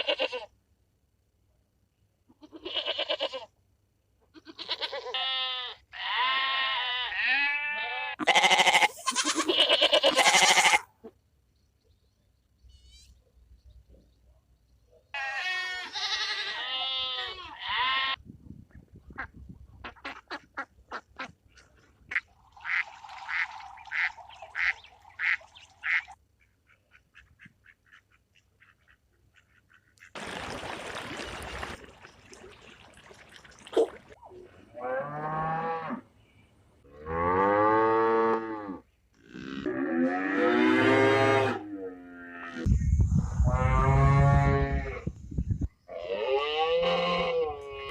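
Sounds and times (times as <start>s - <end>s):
ducks quacking: 19.1s - 34.6s.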